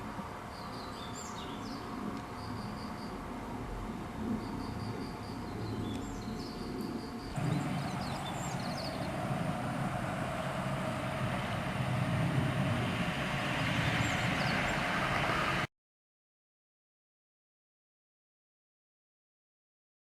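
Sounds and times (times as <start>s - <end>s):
insects chirping: 4.4s - 15.6s
steady hiss: 6.6s - 15.7s
diesel train engine rumble: 7.4s - 15.7s.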